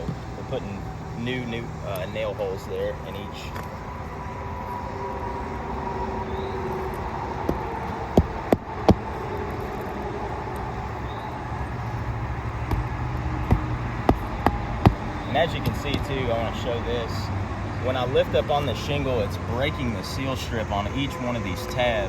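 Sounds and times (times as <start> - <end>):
steady low rumble: 0.0 - 22.0.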